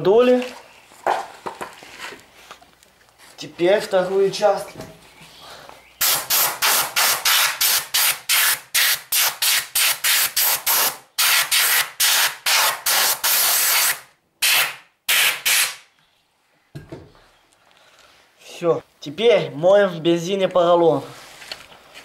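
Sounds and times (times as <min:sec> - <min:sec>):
air wash gun spraying blasts: 0:06.0 - 0:15.8.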